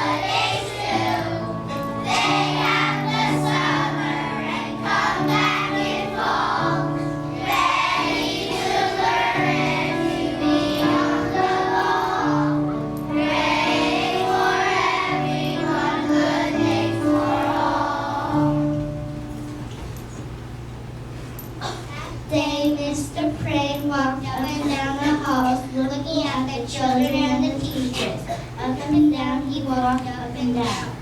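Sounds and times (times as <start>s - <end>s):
children singing: 0.0s - 18.8s
instrumental accompaniment: 0.0s - 21.6s.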